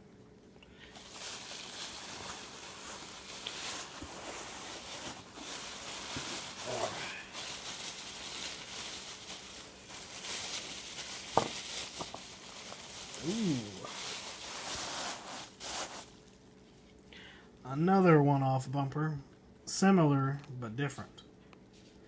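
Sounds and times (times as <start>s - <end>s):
packing material rustling and crinkling: 0.8s - 16.5s.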